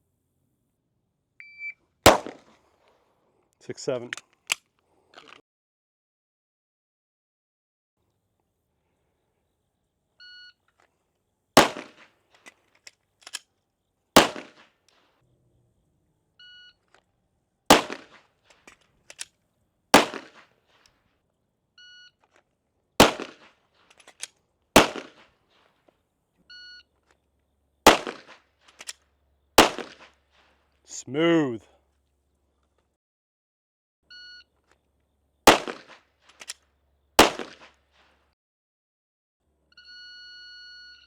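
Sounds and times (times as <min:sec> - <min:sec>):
handgun shots: 0:02.1 - 0:02.6, 0:11.6 - 0:12.1, 0:14.2 - 0:14.7, 0:17.7 - 0:19.2, 0:20.0 - 0:20.5, 0:23.0 - 0:25.3, 0:27.9 - 0:29.0, 0:29.6 - 0:30.2, 0:35.5 - 0:36.6, 0:37.2 - 0:37.8.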